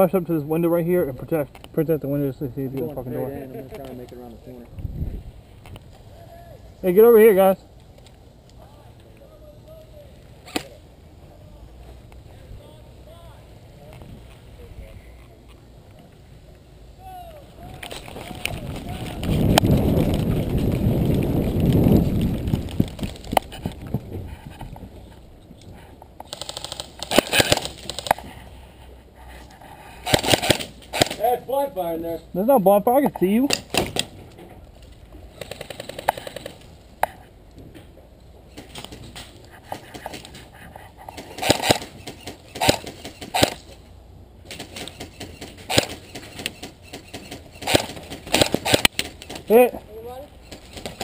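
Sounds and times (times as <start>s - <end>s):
loud cracks: 26.2s - 28.3s, 30.0s - 31.3s, 33.5s - 34.2s, 35.3s - 37.2s, 41.1s - 43.8s, 44.4s - 49.5s
sharp clicks: 26.2s - 28.3s, 30.0s - 31.2s, 35.4s - 37.6s, 41.0s - 43.8s, 44.5s - 49.5s
rattling ticks: 34.8s - 37.2s.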